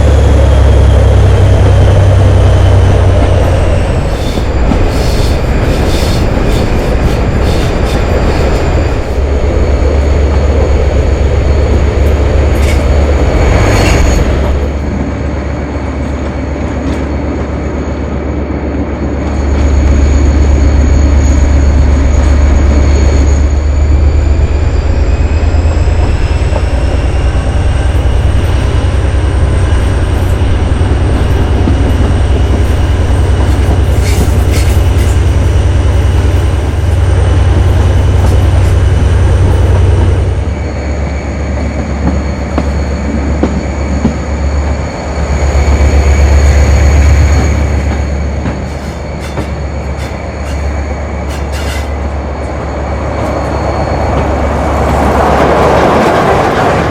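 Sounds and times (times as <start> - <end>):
diesel locomotive engine: 0.0 - 56.9
high engine whine: 0.0 - 56.9
wheels clicking over rail joints: 47.8 - 52.1.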